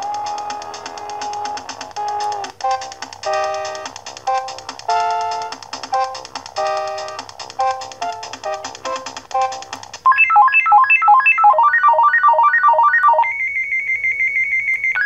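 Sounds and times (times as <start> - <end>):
pure ringtone beeps: 10.0 - 13.5
chiming ringtone melody: 10.1 - 13.3
rapid trilling beep: 10.1 - 13.4.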